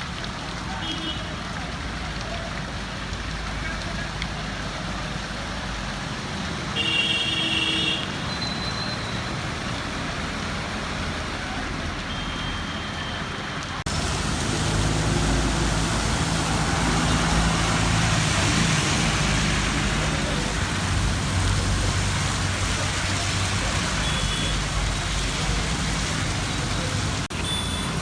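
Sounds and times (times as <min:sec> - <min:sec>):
road traffic hiss: 0:00.0 - 0:28.0
vehicle engine humming low: 0:13.8 - 0:28.0
vehicle horn: 0:27.4 - 0:28.0.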